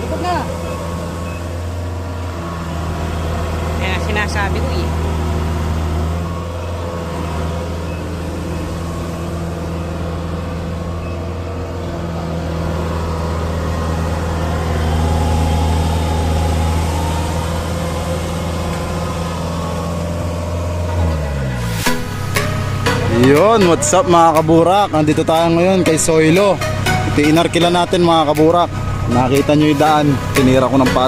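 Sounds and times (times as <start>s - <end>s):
harvester engine humming: 0.0s - 31.0s
high whine: 6.0s - 31.0s.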